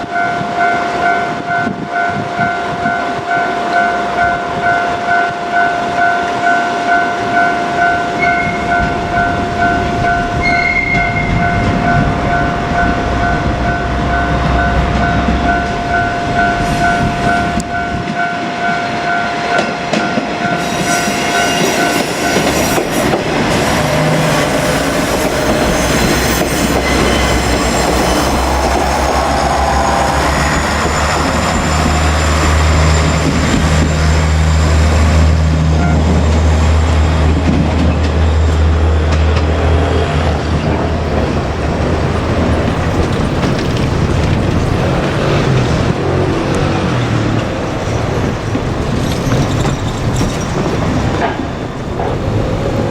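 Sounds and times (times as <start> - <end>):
level-crossing bell dinging: 0.0 - 23.1
diesel railcar engine hum: 0.0 - 52.9
rail noise: 0.0 - 52.9.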